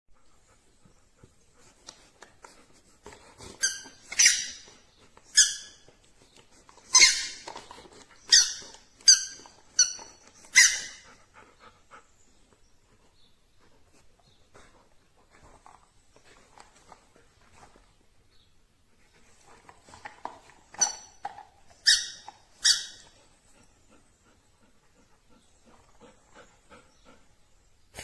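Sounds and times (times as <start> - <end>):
squeaky dog toy squeaking: 3.6 - 4.7, 5.3 - 5.9, 6.9 - 7.6, 8.2 - 11.1, 20.7 - 23.2.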